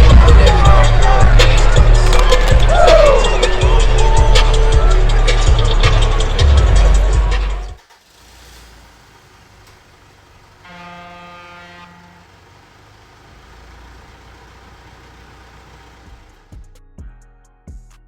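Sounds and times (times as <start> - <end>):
low outdoor rumble: 0.0 - 16.5
horn blast: 8.6 - 14.5.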